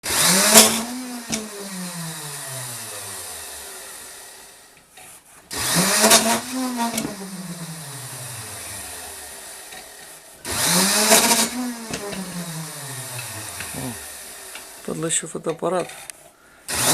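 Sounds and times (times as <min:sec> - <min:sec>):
electric drill motor whining: 0:00.0 - 0:04.8, 0:05.5 - 0:15.0, 0:16.7 - 0:16.9
drill switch clicks: 0:00.5 - 0:01.6.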